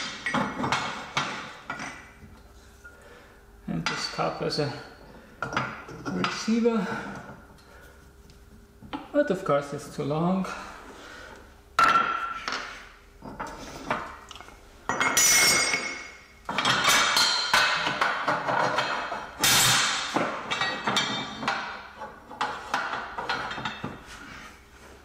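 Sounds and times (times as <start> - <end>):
metal tools clanking: 20.4 - 21.8.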